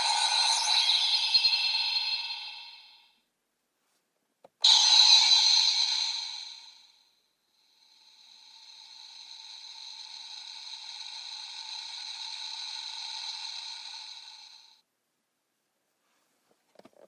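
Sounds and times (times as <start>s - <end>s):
high-pitched electronic drone: 0.0s - 3.2s, 4.6s - 14.8s.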